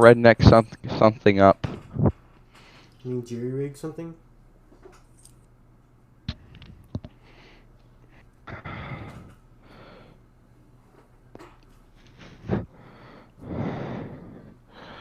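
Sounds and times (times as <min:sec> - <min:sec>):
breathy exhale: 0:08.5 - 0:10.2, 0:12.2 - 0:15.0.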